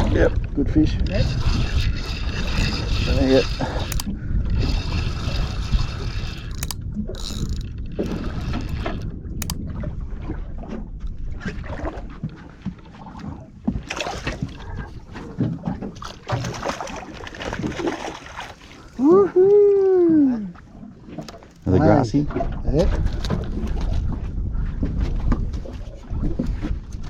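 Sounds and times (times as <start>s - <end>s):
water lapping against boat hull: 1.0s - 27.0s
wind buffeting microphone: 21.6s - 27.0s.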